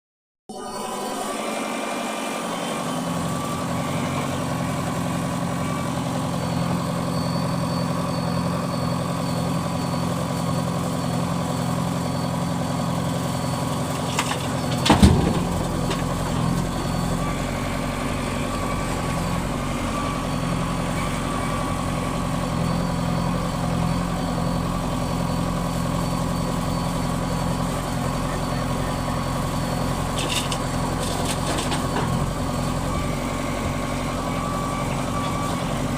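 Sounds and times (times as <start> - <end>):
heavy diesel engine running: 0.5 - 35.9
loud thump: 14.8 - 15.6.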